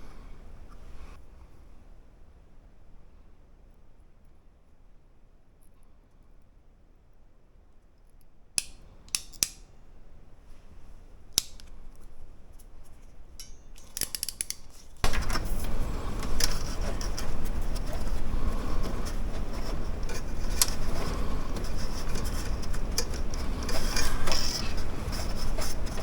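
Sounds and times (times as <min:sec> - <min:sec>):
hand tool snipping wire: 0:08.6 - 0:09.6, 0:11.4 - 0:11.7, 0:13.4 - 0:15.5.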